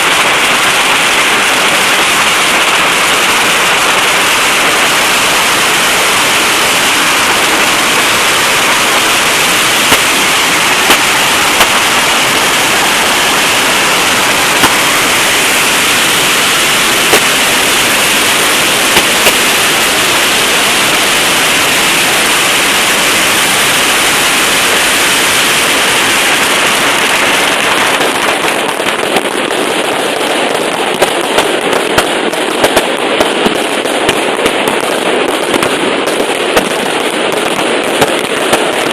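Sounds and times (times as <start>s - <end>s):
firecrackers crackling: 0.0s - 38.9s
firework bangs: 0.0s - 38.9s.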